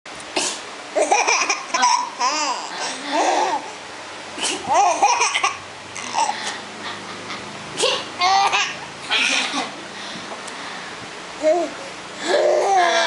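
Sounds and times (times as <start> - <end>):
baby laughing: 1.0 - 3.6, 4.6 - 9.7, 11.4 - 13.0
woman fake sneezing: 7.8 - 8.1.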